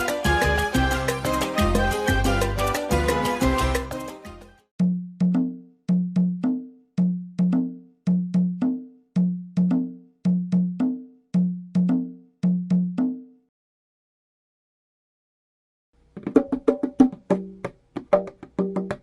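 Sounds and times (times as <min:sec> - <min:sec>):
full band music: 0:00.0 - 0:04.5.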